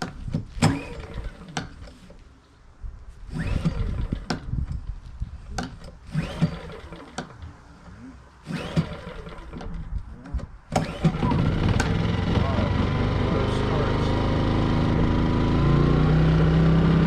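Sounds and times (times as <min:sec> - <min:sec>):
recoil starter cord pulls: 0:00.0 - 0:02.2, 0:03.3 - 0:04.8, 0:05.5 - 0:15.2.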